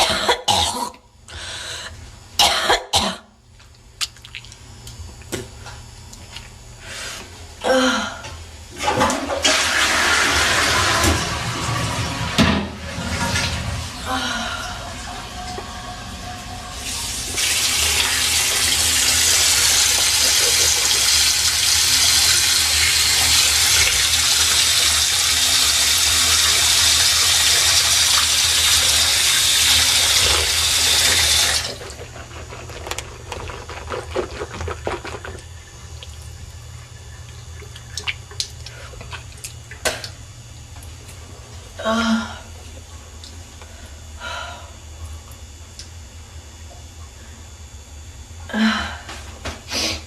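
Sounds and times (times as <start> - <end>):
water running: 8.8 - 41.2.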